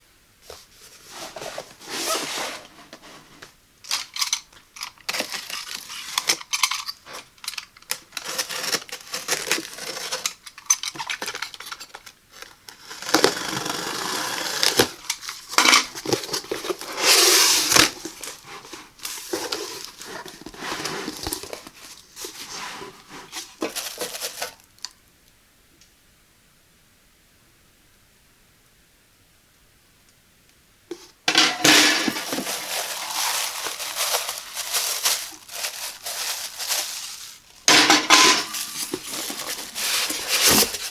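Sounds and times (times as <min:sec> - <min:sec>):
cardboard box packaging rustling: 0:00.5 - 0:24.8, 0:31.3 - 0:40.9.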